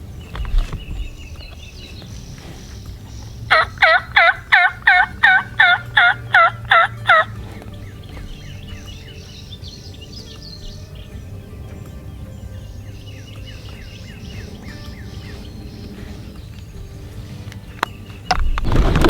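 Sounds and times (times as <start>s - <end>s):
faint songbirds: 0.0s - 19.0s
turkey call yelps: 3.5s - 11.7s.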